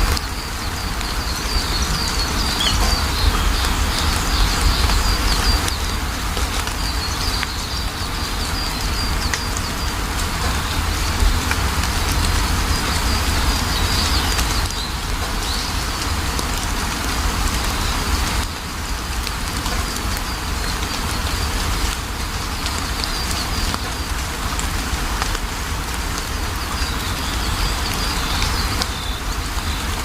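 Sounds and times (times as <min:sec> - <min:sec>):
steady rain falling: 0:00.0 - 0:30.0
bird chirping: 0:00.9 - 0:05.9.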